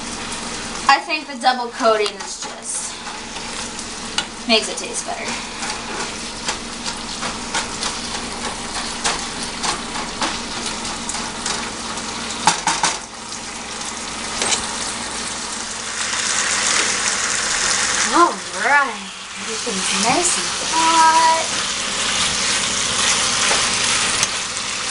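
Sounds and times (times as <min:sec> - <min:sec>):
chicken sizzling in frying pan: 0:00.0 - 0:24.9
utensil scraping against pan: 0:02.1 - 0:11.7.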